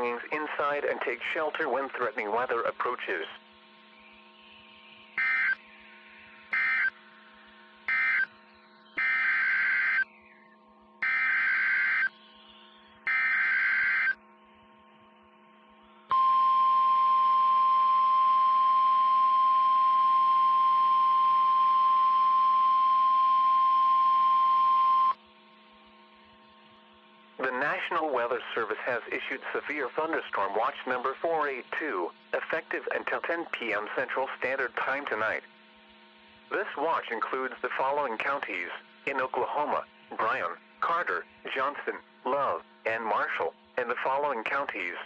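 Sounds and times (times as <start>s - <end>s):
low steady hum: 0.0s - 45.0s
warbling data tone bursts: 4.1s - 14.2s
steady single-pitched alarm tone: 4.2s - 10.4s, 11.0s - 15.5s, 16.1s - 25.2s.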